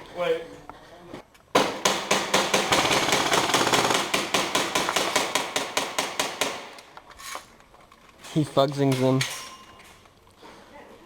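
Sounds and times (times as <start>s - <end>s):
airsoft gunfire: 1.6s - 6.8s.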